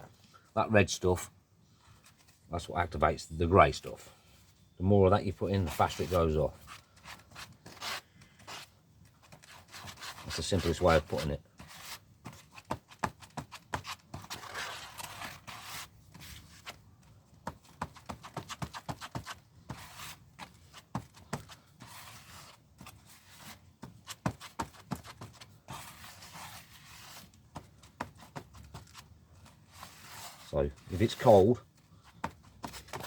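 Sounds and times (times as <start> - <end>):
tool scraping paste: 5.7 - 16.8, 17.8 - 33.0.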